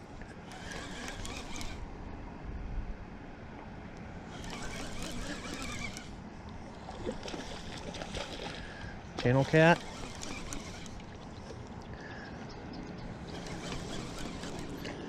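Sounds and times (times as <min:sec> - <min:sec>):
water splashing: 0:06.8 - 0:11.8.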